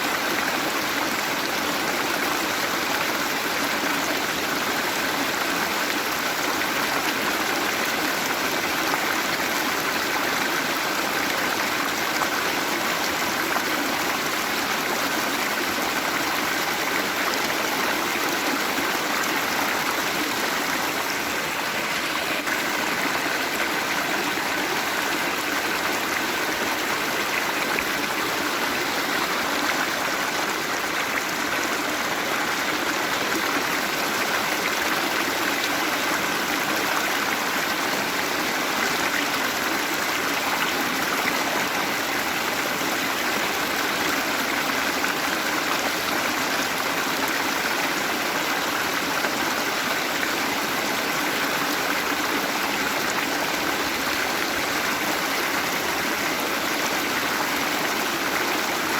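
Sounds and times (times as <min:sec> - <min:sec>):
waterfall rushing: 0:04.6 - 0:36.4.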